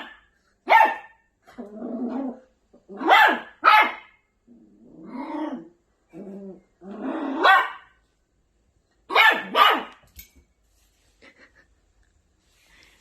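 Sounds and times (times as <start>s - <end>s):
puppy barking: 0.0s - 1.3s, 3.0s - 4.2s, 7.4s - 8.0s, 9.1s - 10.0s
puppy growling: 1.5s - 3.0s, 4.5s - 7.5s.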